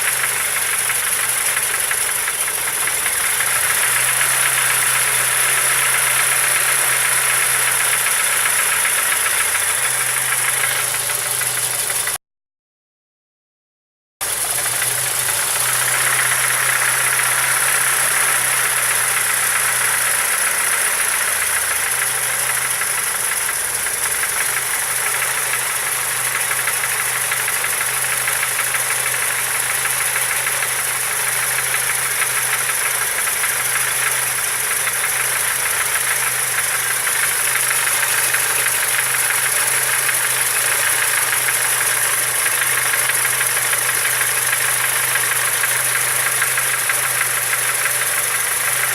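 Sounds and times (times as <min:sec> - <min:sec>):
car engine idling: 0:00.0 - 0:12.2, 0:14.2 - 0:48.9
fast engine knock: 0:00.0 - 0:12.2, 0:14.2 - 0:48.9.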